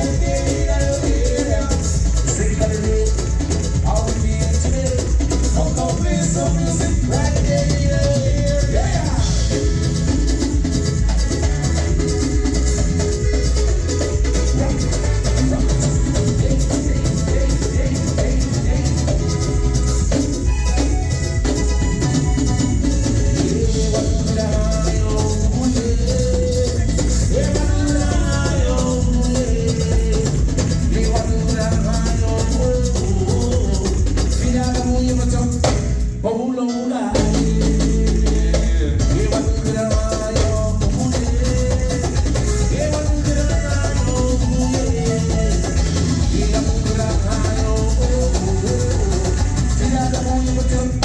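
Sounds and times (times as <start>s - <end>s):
live band playing: 0.0s - 51.0s.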